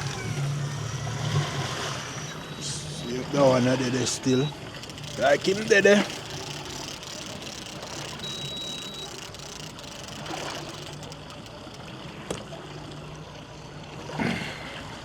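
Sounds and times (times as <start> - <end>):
boat motor idling: 0.0 - 13.8
water lapping around hull: 0.0 - 15.0
sharp click: 4.8 - 12.4.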